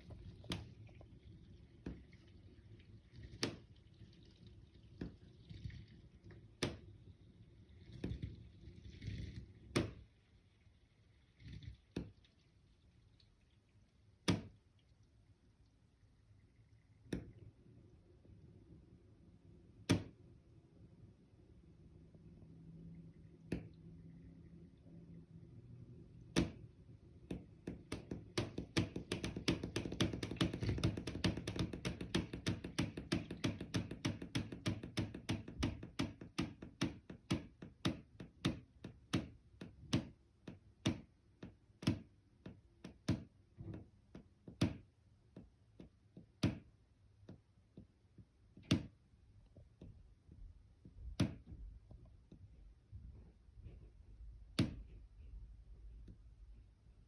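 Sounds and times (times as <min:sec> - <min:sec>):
popping and ticking knocks in wall: 0:00.0 - 0:10.3, 0:26.2 - 0:56.4.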